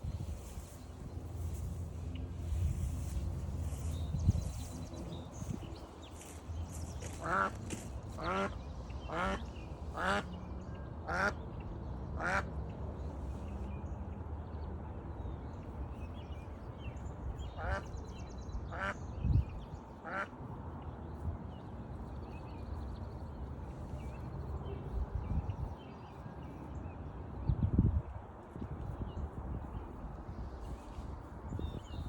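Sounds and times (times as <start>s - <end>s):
duck quacking: 7.0s - 7.6s.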